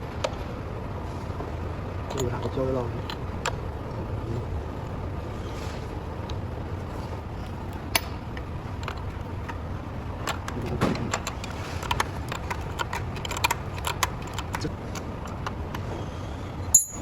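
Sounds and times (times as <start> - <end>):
steady low hum: 0.0 - 17.0
metallic clicks of tools: 16.7 - 17.0.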